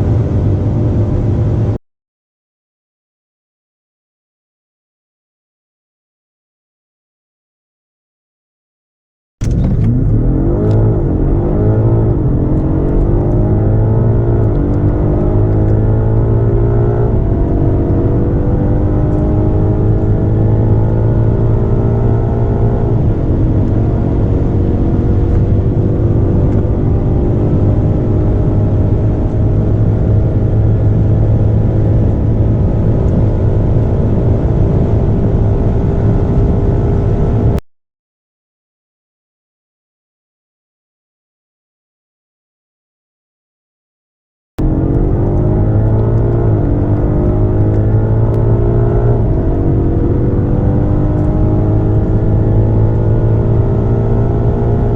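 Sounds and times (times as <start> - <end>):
car engine accelerating: 0.0 - 1.8, 9.4 - 37.6, 44.6 - 54.9
road and wind drone: 0.0 - 1.8, 9.4 - 37.6, 44.6 - 54.9.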